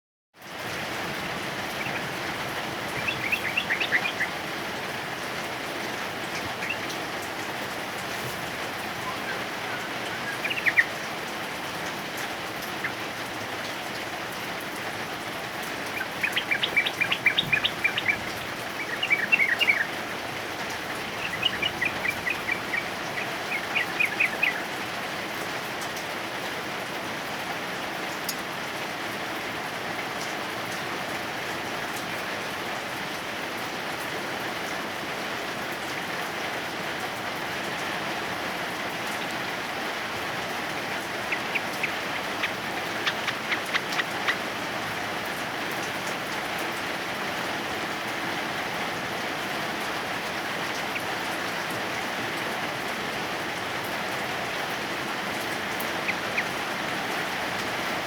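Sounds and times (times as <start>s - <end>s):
heavy rain hiss: 0.4s - 58.0s
bird chattering: 2.9s - 4.4s, 9.0s - 11.0s, 16.0s - 19.9s, 21.0s - 24.7s, 40.5s - 44.7s, 55.7s - 56.8s.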